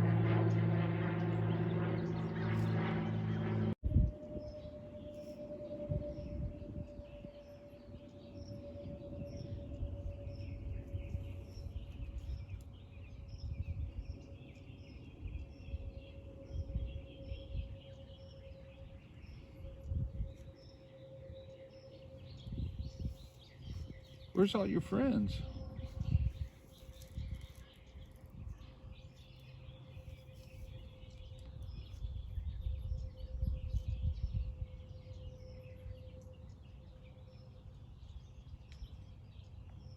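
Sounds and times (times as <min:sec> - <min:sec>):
uneven low rumble: 0:00.0 - 0:36.3
small birds chirping: 0:06.5 - 0:39.9.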